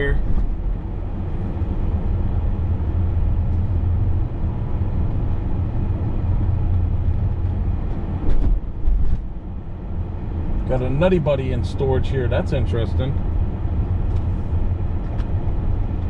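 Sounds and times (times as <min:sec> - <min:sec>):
vehicle engine and road rumble: 0:00.0 - 0:16.0.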